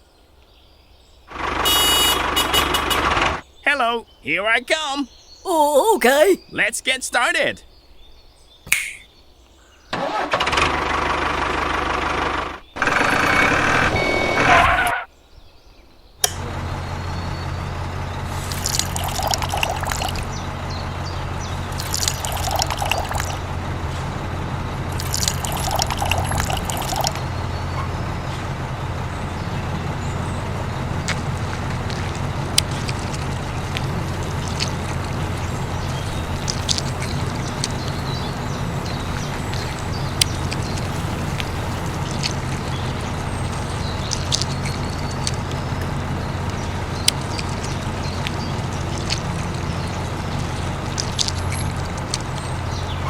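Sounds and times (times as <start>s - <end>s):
pouring or scraping: 18.3s - 20.2s, 21.8s - 23.3s, 25.0s - 27.2s, 38.8s - 52.5s.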